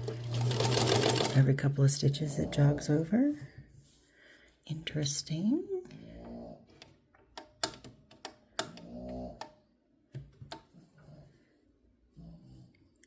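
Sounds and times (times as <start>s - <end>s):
sewing machine knobs clicking: 6.7s - 9.6s.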